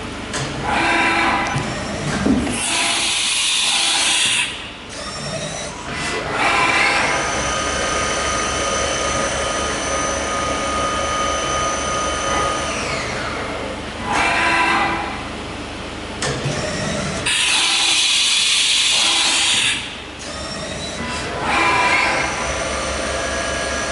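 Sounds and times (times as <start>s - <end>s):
steady high machine whine: 0.0s - 23.9s
machine hiss: 2.6s - 4.6s.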